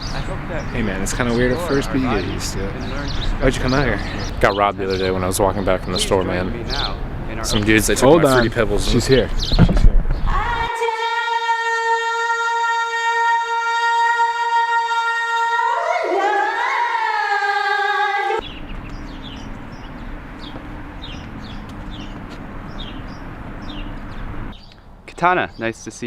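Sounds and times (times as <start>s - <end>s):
birds chirping: 0.0s - 10.7s, 17.3s - 26.0s.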